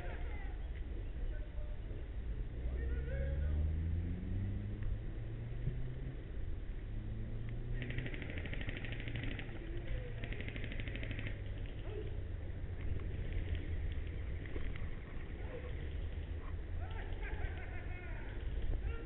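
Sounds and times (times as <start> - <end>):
airsoft rifle bursts: 7.8 - 9.5, 10.1 - 11.8.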